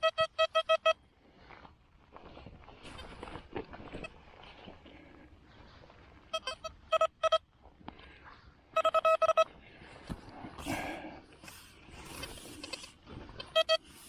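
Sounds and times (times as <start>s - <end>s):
metal detector beeping: 13.5s - 14.0s.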